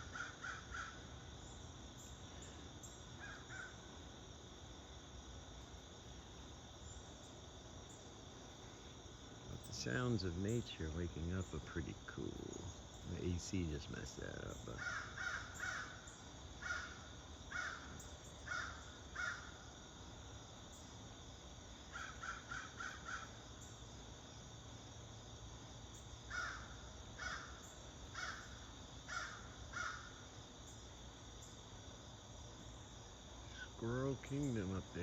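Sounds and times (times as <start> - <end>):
crows cawing: 0.0 - 1.1, 3.2 - 3.8, 14.8 - 19.6, 21.9 - 23.4, 26.3 - 30.2
insect drone: 0.0 - 35.0.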